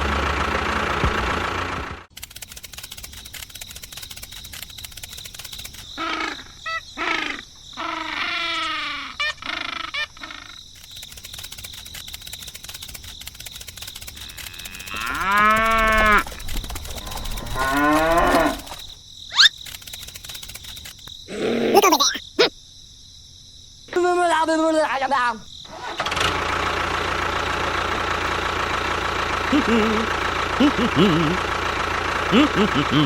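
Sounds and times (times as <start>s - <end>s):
cattle mooing: 14.4s - 16.3s, 17.4s - 18.8s.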